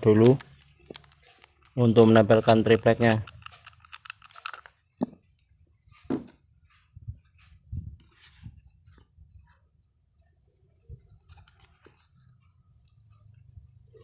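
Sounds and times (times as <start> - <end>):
hands handling sanding pad and wood: 0.2 - 9.8.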